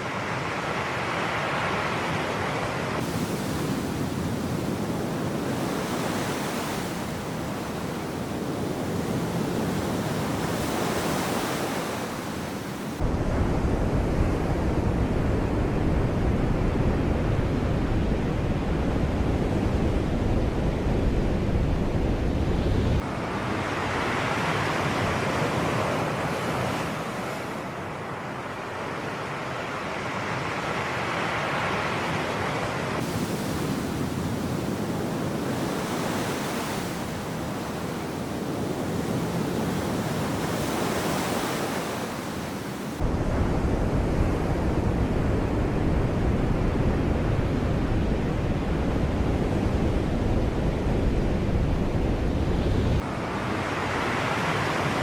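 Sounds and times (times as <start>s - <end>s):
sea surf washing: 0.0s - 14.7s, 21.8s - 55.0s.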